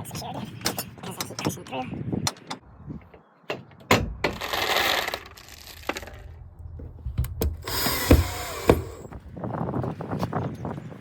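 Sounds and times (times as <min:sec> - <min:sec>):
sharp knocks and clicks: 0:06.8 - 0:09.2.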